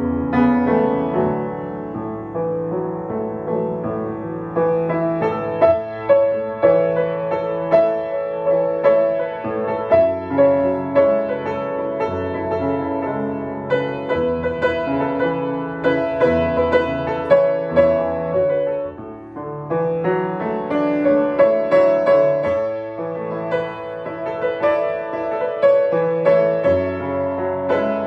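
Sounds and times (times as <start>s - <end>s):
piano playing: 0.0s - 28.0s.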